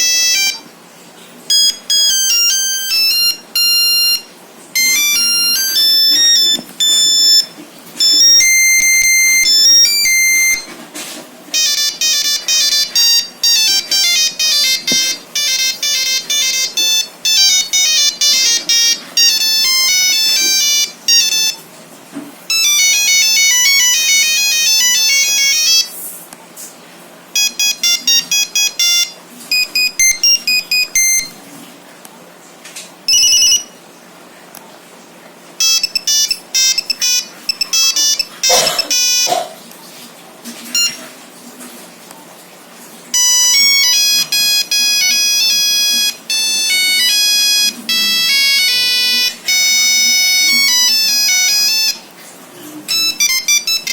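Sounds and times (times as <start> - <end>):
monophonic ringtone beeping melodies: 0.0 - 0.7, 1.5 - 10.8, 11.5 - 21.6, 22.5 - 25.9, 27.4 - 31.4, 33.1 - 33.8, 35.6 - 39.4, 43.2 - 52.1, 52.9 - 53.9.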